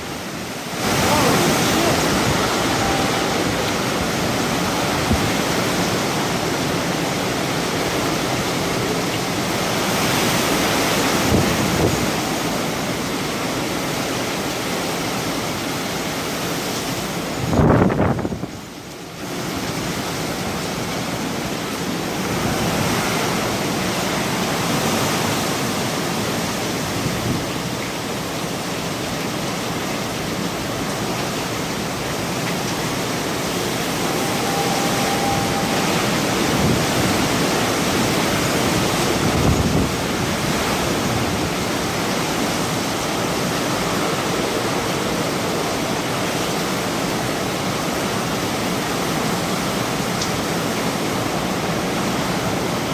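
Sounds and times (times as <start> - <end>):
hurricane winds rushing: 0.0 - 52.9
faint thin whistle: 34.0 - 36.8.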